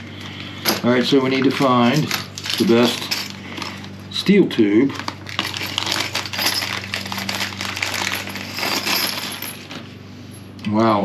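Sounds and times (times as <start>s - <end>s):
small metal tubes clinking: 1.4s - 3.9s, 5.0s - 9.8s.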